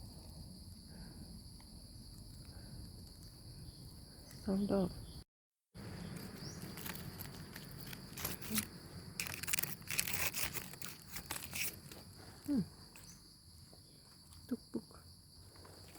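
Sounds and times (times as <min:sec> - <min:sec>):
insects buzzing: 0:00.0 - 0:05.2, 0:05.8 - 0:15.9
dry leaves crackling and rustling: 0:06.1 - 0:11.9.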